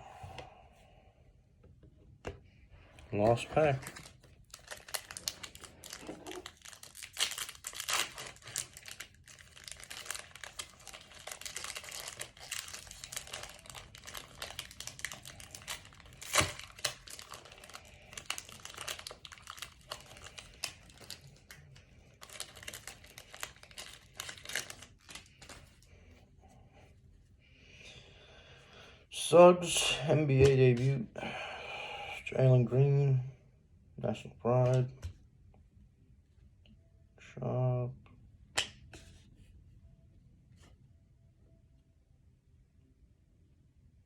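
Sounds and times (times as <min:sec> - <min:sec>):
foil pack crinkling and tearing: 0:03.5 - 0:25.8.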